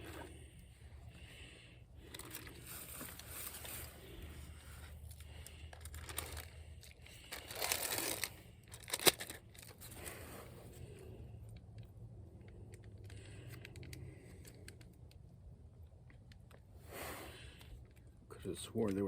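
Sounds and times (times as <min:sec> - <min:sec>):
plastic packaging crinkling: 0:02.0 - 0:10.1.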